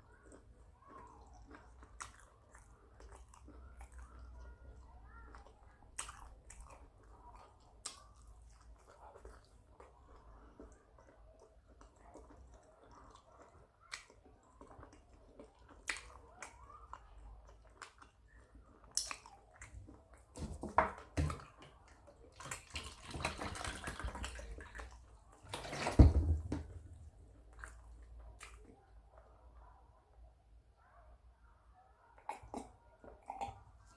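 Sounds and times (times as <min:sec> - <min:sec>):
person chewing with mouth smacks: 0:00.0 - 0:20.4, 0:27.3 - 0:28.9, 0:32.2 - 0:33.9.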